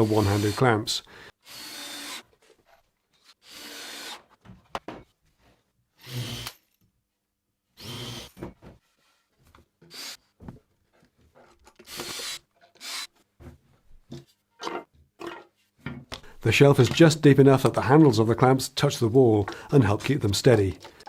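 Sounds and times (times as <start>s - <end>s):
power drill driving screws: 0.0s - 0.6s, 1.4s - 2.3s, 3.2s - 4.3s, 6.0s - 6.6s, 7.8s - 8.4s, 11.8s - 13.1s.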